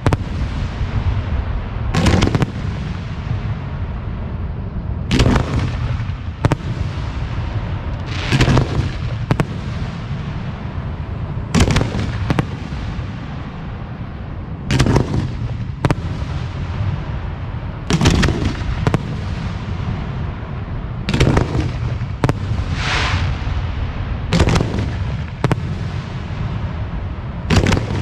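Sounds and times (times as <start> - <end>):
sharp firework cracks: 0.0 - 3.6, 5.1 - 10.3, 11.6 - 13.1, 14.7 - 16.9, 17.9 - 20.0, 21.1 - 26.7, 27.5 - 28.0
firework booms: 0.0 - 28.0
steady low rumble: 0.0 - 28.0.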